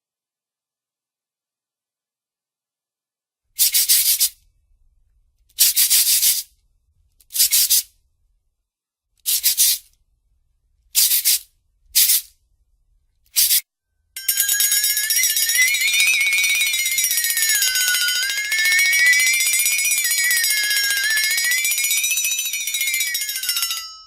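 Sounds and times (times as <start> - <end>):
hissing scratchy cartoon bursts: 11.0 - 11.4, 12.0 - 12.3, 13.4 - 13.6.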